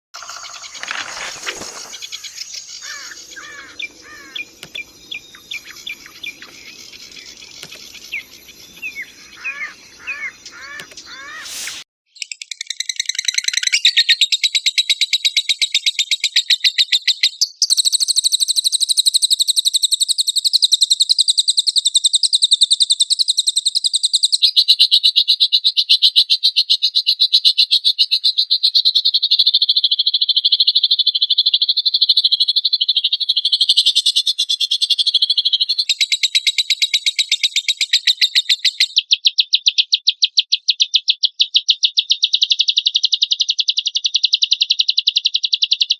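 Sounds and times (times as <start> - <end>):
lovebird chattering trill: 0.2 - 11.8.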